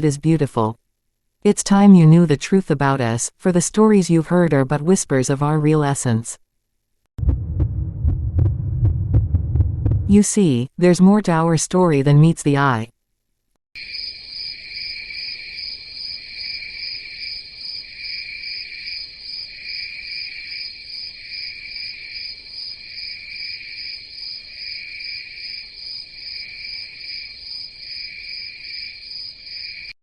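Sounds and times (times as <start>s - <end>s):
crickets trilling: 13.8s - 29.9s.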